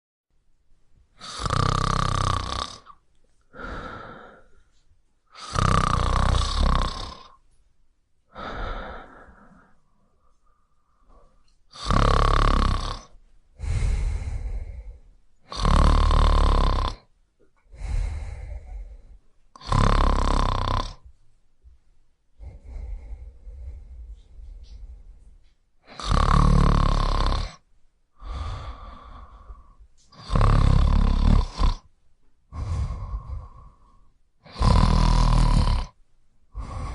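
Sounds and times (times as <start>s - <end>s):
person snoring: 1.2s - 4.6s, 5.3s - 7.4s, 8.3s - 9.8s, 11.1s - 17.1s, 17.7s - 21.0s, 22.4s - 25.2s, 25.8s - 27.6s, 28.2s - 31.9s, 32.5s - 36.9s
soft breaths: 2.8s - 7.7s, 8.3s - 36.9s.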